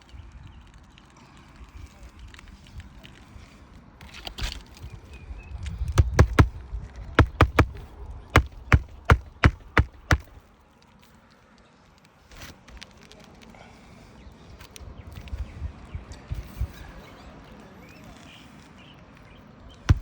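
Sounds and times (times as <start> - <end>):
hammer striking nails: 6.0 - 6.6, 7.2 - 7.8, 8.4 - 10.4.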